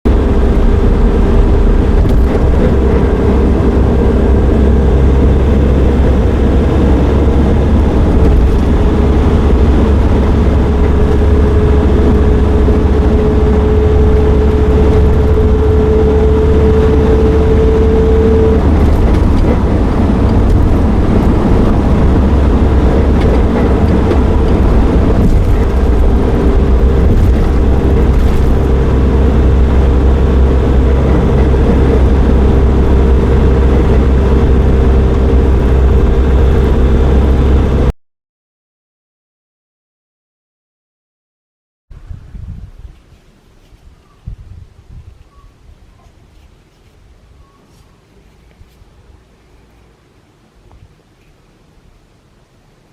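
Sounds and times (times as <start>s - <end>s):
van engine rumble: 0.0s - 37.9s
hum rising in pitch: 0.1s - 37.9s.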